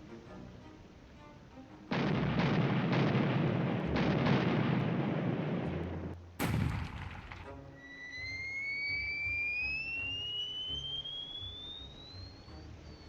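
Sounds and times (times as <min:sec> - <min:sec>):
rumbling blast: 0:01.9 - 0:07.7
sharp crack: 0:01.9 - 0:08.2.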